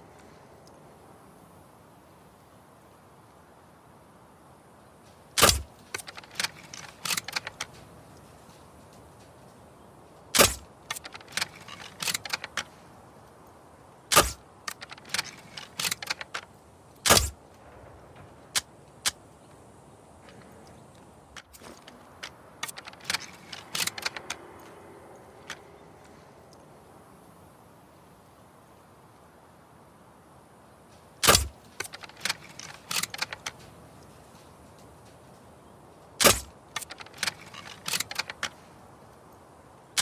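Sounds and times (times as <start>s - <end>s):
mechanical clicks: 5.3s - 9.6s, 10.2s - 13.5s, 14.1s - 19.2s, 20.2s - 26.7s, 31.2s - 35.2s, 36.2s - 38.6s.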